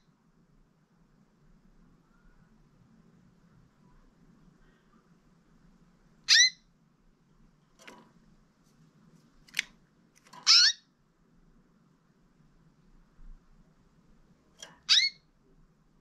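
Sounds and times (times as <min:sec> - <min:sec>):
canary chirps: 0:06.2 - 0:06.7, 0:10.2 - 0:11.0, 0:14.6 - 0:15.4.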